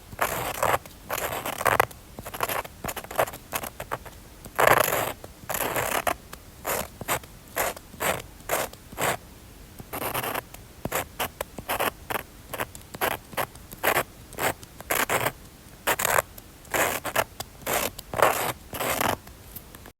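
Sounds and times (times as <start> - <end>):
drawing tool scratching paper: 0.2 - 4.0, 4.6 - 6.9, 10.0 - 15.3, 15.9 - 19.2.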